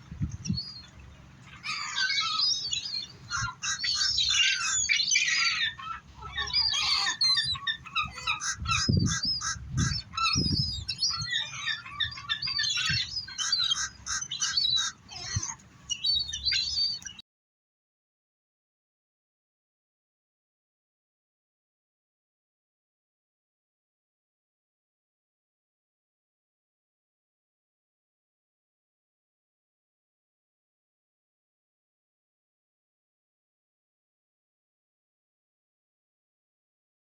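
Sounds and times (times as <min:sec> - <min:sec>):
flock of birds calling: 0:00.4 - 0:17.2.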